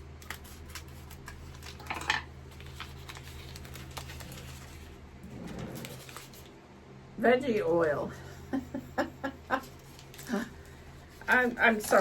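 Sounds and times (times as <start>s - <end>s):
plastic packaging crinkle: 0.0s - 6.5s.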